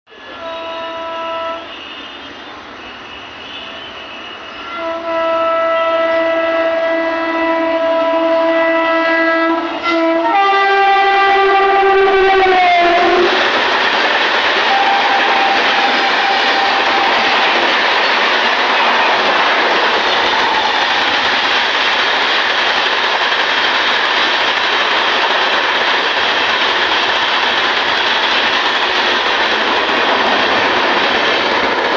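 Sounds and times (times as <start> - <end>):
train horn blasts: 0.1 - 13.4, 14.6 - 17.6
train wheels rushing on track: 0.1 - 31.9.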